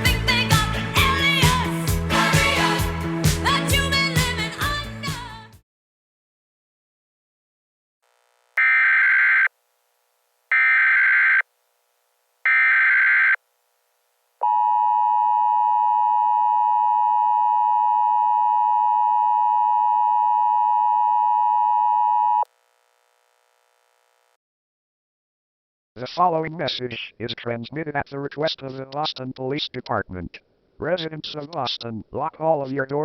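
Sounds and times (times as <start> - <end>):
digital data tone bursts: 8.6 - 9.5.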